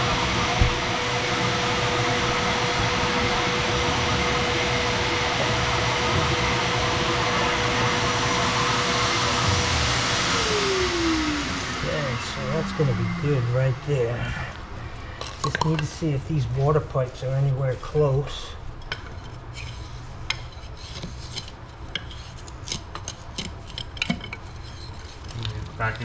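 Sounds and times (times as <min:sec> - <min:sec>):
shop vacuum whining: 0:00.0 - 0:15.9.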